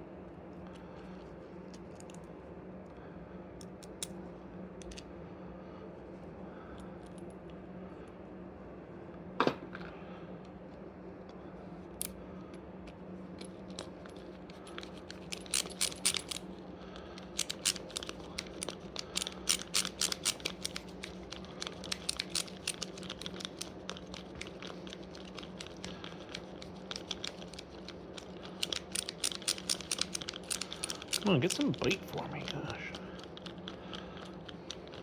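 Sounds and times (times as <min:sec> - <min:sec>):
faint steady hum: 0:00.0 - 0:35.0
metallic clicks of hand tools: 0:17.3 - 0:23.7, 0:28.2 - 0:32.6.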